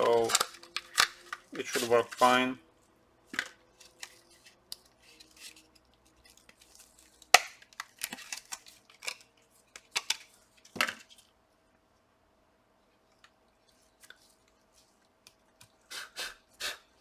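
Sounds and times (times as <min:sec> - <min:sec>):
tools clicking on laptop internals: 0:00.0 - 0:01.8.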